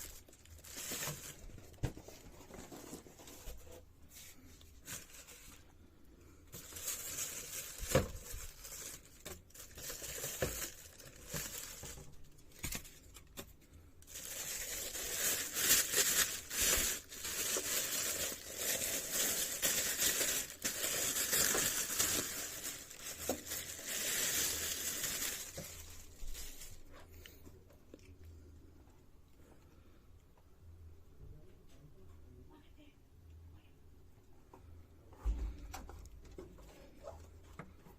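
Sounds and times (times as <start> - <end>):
packaging crinkling and rustling: 0.0 - 5.8, 6.5 - 27.0.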